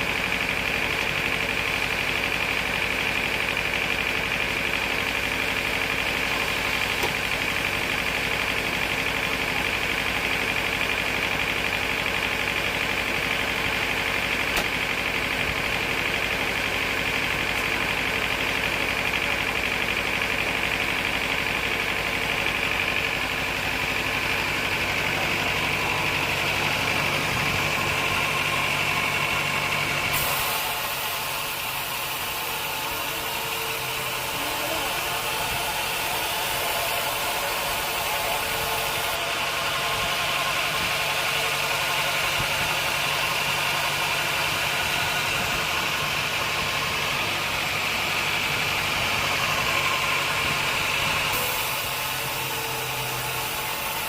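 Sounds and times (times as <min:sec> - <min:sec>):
motor drone: 0:00.0 - 0:54.0
high machine whine: 0:21.0 - 0:54.0.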